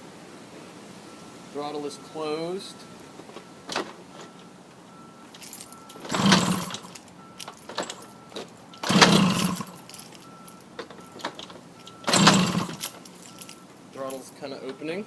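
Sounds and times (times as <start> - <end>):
moped engine cranking: 5.4 - 10.2, 10.8 - 13.5.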